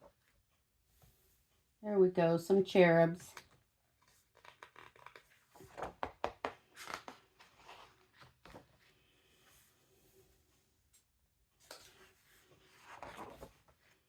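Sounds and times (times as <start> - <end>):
book pages turning: 3.4 - 9.0, 11.6 - 14.0.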